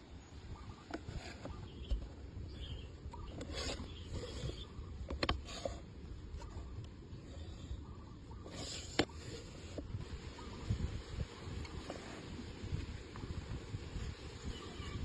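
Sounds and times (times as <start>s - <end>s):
scraping and rubbing on wood: 3.2s - 6.7s.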